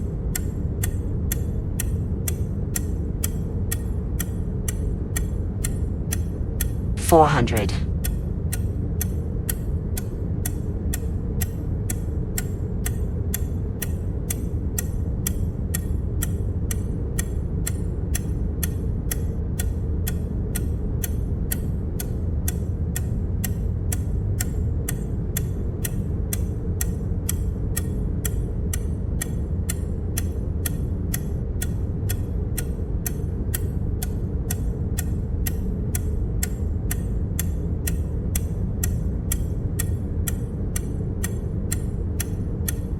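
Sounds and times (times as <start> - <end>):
steady low rumble: 0.0 - 42.9.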